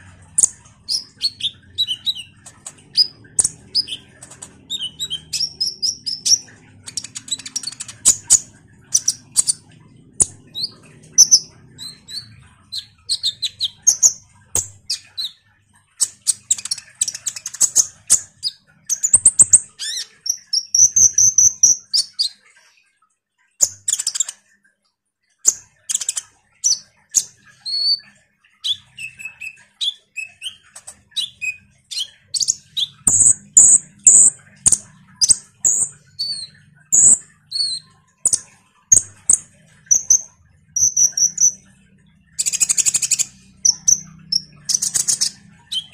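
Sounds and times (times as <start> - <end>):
sunbird singing chirps and trills: 0.3 - 15.4, 27.5 - 41.6, 42.3 - 45.9.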